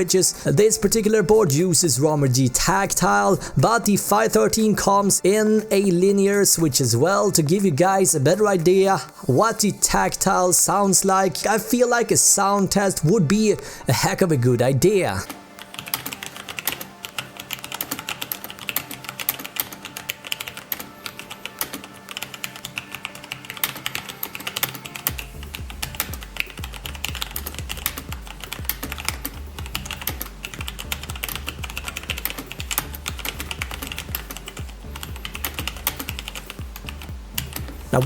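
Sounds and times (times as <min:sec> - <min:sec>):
fast mechanical keyboard typing: 0:15.6 - 0:37.7
background music with bass beat: 0:25.1 - 0:38.0.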